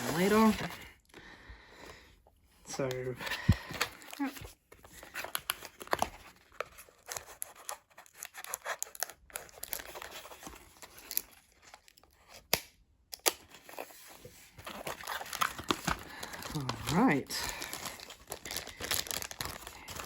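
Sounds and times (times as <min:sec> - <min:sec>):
paper and plastic rustling: 0:00.0 - 0:01.0, 0:02.7 - 0:12.0, 0:13.5 - 0:20.0.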